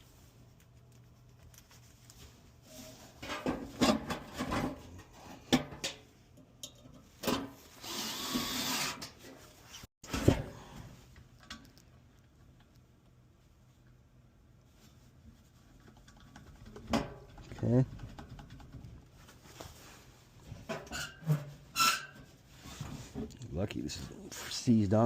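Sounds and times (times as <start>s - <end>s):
tools and sheet metal clattering: 3.2s - 7.6s.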